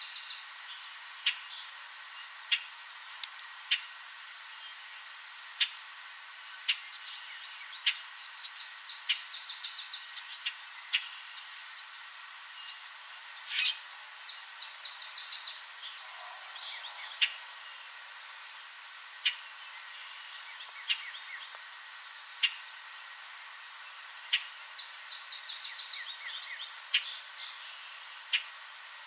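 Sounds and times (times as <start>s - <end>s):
faint bird chirps: 13.4s - 18.4s.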